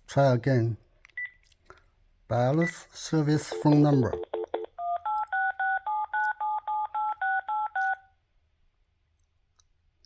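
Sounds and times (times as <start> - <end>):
telephone keypad beeps: 3.5 - 8.0.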